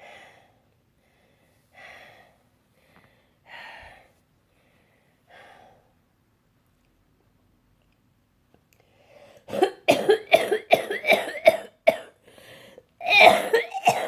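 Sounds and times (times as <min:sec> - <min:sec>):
woman breathing hard: 0:00.0 - 0:06.0, 0:12.2 - 0:12.9.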